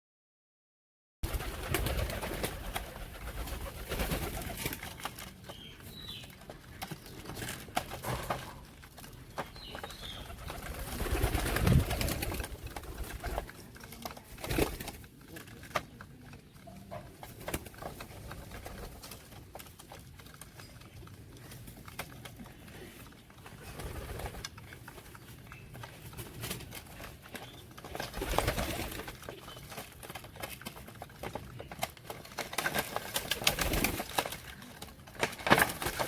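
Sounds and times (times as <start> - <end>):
clicks and rustles: 1.8 - 36.0.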